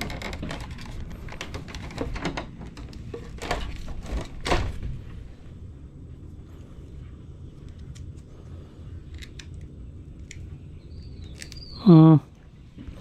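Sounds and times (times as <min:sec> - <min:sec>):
clicks knocks and clatters: 0:00.0 - 0:04.9.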